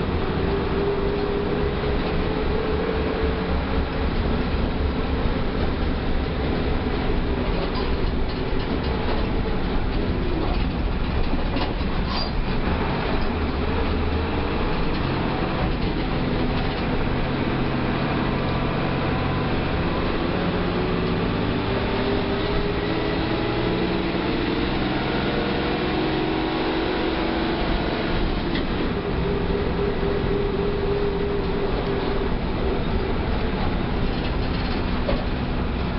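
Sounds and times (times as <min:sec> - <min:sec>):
bus diesel engine running: 0:00.0 - 0:35.9.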